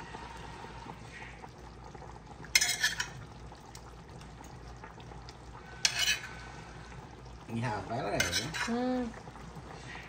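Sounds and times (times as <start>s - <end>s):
spoon stirring a pot: 2.4s - 7.1s, 7.9s - 10.0s
spoon clattering against pot: 8.2s - 8.7s.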